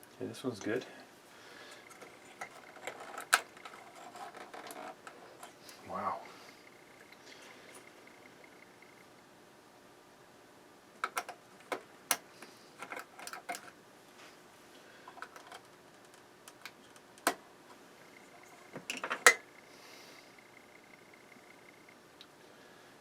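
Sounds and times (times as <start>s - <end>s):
small metal and glass parts clicking: 1.7s - 9.0s, 12.8s - 13.7s.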